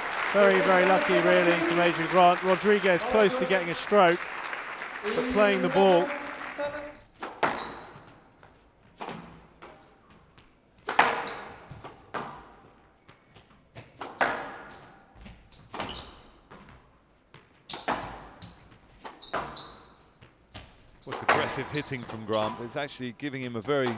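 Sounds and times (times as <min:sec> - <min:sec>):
shoes squeaking on court floor: 0:00.2 - 0:14.0, 0:14.6 - 0:22.7
squash ball hitting rackets and walls: 0:07.2 - 0:08.2, 0:08.9 - 0:09.9, 0:10.8 - 0:12.7, 0:13.4 - 0:16.8, 0:17.6 - 0:19.9, 0:20.5 - 0:22.6.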